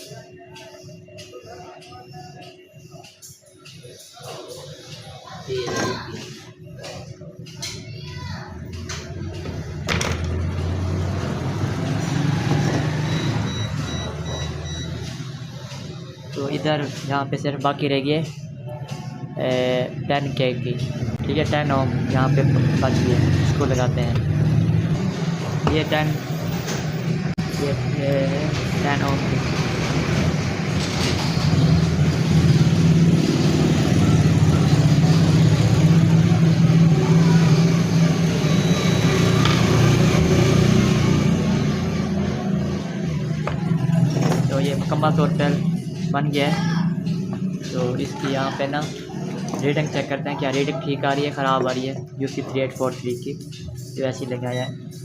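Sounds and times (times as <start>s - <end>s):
short high beep: 13.0s - 15.1s.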